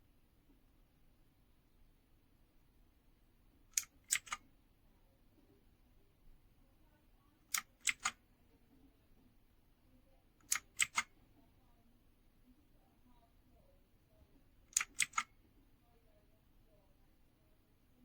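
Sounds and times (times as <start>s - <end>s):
mechanical keyboard clicks: 3.7s - 4.4s, 7.5s - 8.2s, 10.4s - 11.1s, 14.7s - 15.3s.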